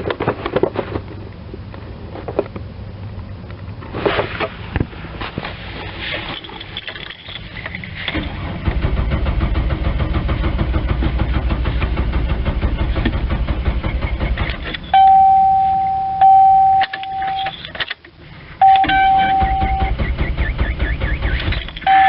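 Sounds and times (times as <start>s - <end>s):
car starter cranking engine: 6.1s - 22.0s
steady-pitched warning chime: 14.9s - 17.6s, 18.6s - 20.0s.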